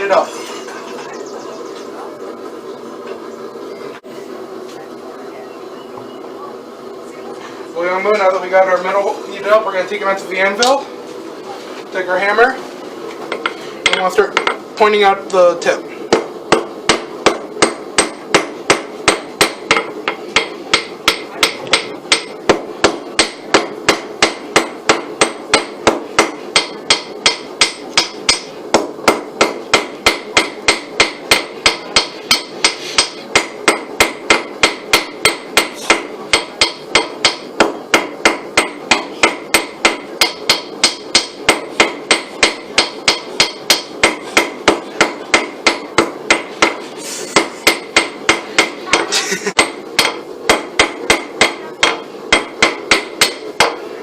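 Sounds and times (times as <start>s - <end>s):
hammer ringing on anvil: 0.1s - 0.9s.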